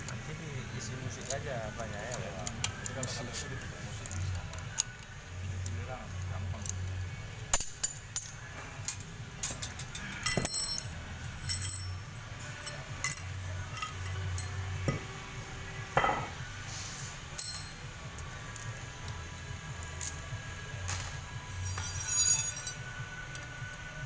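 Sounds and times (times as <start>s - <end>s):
metal tools clinking and knocking: 7.5s - 15.1s, 16.0s - 16.4s, 17.4s - 18.7s, 20.9s - 22.9s.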